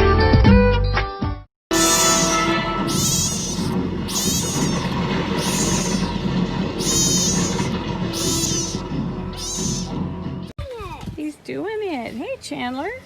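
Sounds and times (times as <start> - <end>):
animal high-pitched calls: 1.8 - 6.2, 6.8 - 10.0
steady background noise: 1.8 - 9.9.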